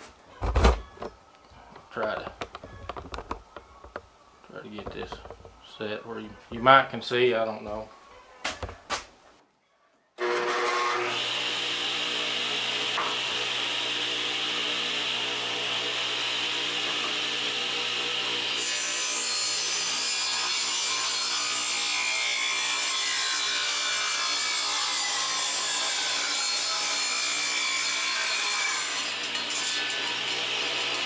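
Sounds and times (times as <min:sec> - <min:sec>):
table saw ripping wood: 0:10.2 - 0:31.0.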